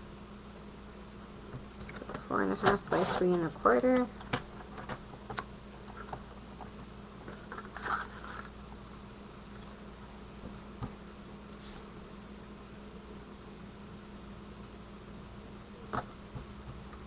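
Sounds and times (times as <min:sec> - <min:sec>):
steady low hum: 0:00.0 - 0:17.0
scratchy paper rustle: 0:02.6 - 0:03.6, 0:07.3 - 0:08.6.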